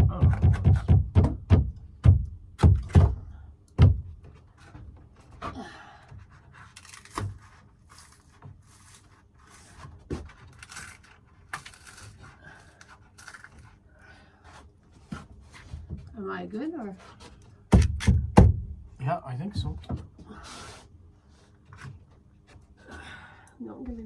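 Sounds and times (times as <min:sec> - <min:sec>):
heavy thumps on wooden board: 0:00.0 - 0:04.3, 0:17.7 - 0:20.1
quiet knocks and handling noise: 0:17.0 - 0:20.4.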